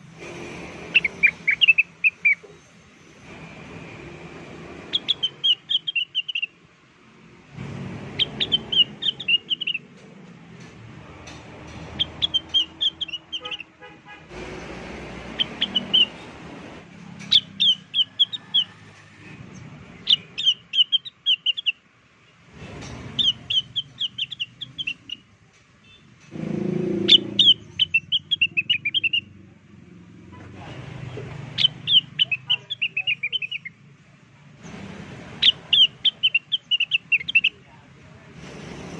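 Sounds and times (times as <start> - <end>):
bird song high chirps: 0.9 - 2.8, 4.9 - 6.6, 8.1 - 9.9, 11.8 - 13.7, 15.3 - 16.3, 17.2 - 18.9, 19.6 - 21.8, 23.2 - 26.2, 27.0 - 29.4, 31.5 - 33.8, 35.4 - 37.6.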